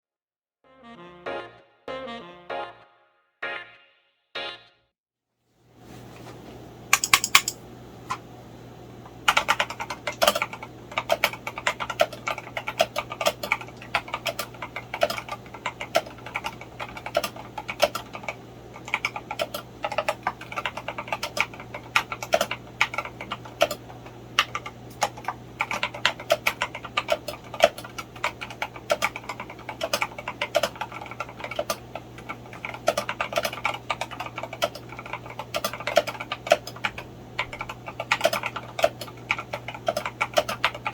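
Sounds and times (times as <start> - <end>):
mechanical keyboard typing: 6.9 - 7.6, 9.2 - 40.9.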